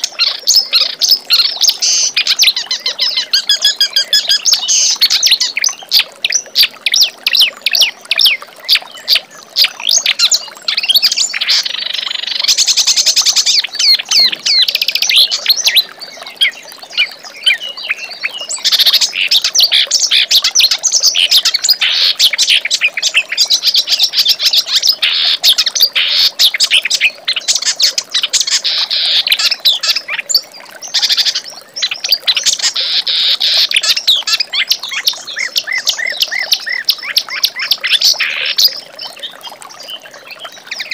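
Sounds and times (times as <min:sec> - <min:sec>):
warbler singing chattering song: 0:06.3 - 0:25.1.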